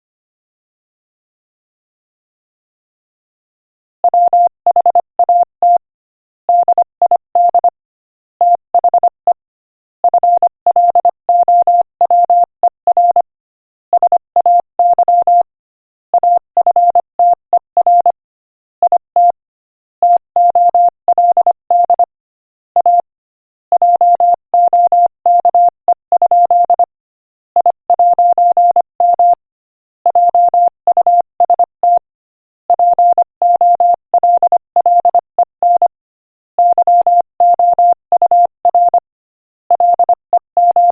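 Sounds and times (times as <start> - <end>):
morse code tone: 32.7 - 36.0, 36.6 - 39.1, 39.7 - 40.9.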